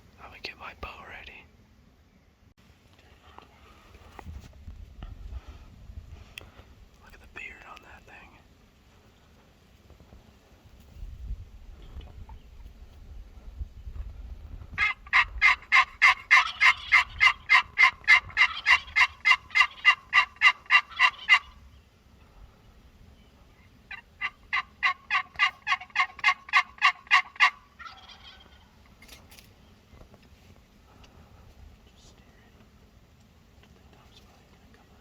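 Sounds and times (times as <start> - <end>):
turkey yelping: 14.8 - 21.6, 23.9 - 28.7.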